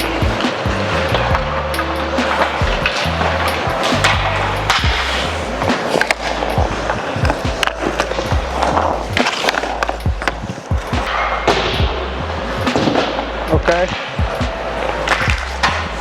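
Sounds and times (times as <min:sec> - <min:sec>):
music with heavy bass line: 0:00.0 - 0:16.0
skates scraping on ice: 0:00.0 - 0:16.0
stick clacking on puck: 0:02.2 - 0:11.8.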